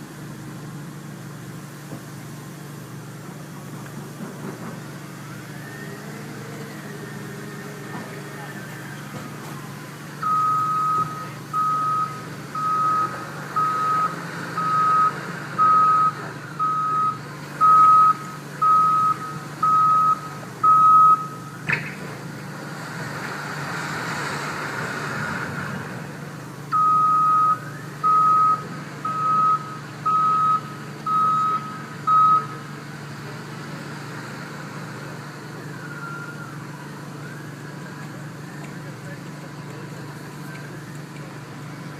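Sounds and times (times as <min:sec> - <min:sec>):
diesel engine drone: 0:00.0 - 0:41.9
reverse alarm beeping: 0:10.2 - 0:21.7, 0:26.7 - 0:32.6.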